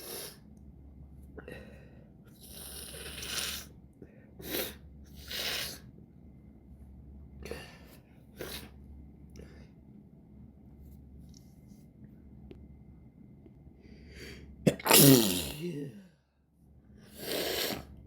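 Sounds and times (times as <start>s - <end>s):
person sniffing and breathing: 0.0s - 0.4s, 2.4s - 3.7s, 4.4s - 5.9s, 17.0s - 18.0s.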